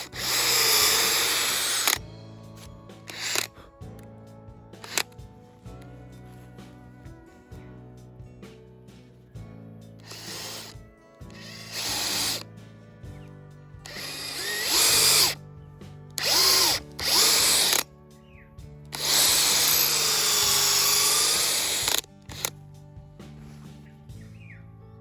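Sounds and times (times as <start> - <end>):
power drill boring into wood: 0.0 - 2.1, 3.0 - 3.6, 4.8 - 5.2, 10.0 - 12.5, 13.9 - 15.4, 16.2 - 17.8, 18.9 - 22.6
background music: 0.0 - 25.0.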